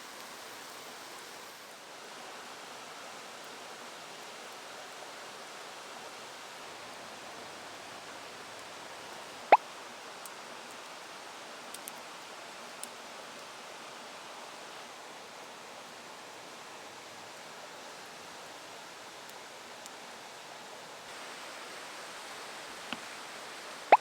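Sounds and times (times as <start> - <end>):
campfire hissing: 0.0 - 24.0
small fire crackles: 0.0 - 24.0.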